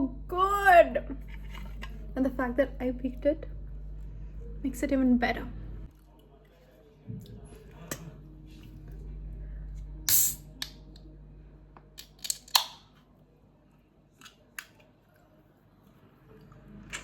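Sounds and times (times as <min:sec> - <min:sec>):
faint low hum: 0:00.0 - 0:12.3.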